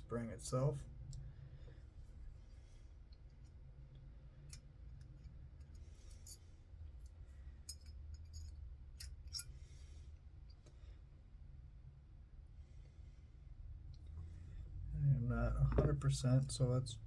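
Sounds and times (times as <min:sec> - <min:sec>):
low steady hum: 0:00.0 - 0:17.0
metallic clicks and scrapes: 0:04.4 - 0:09.8.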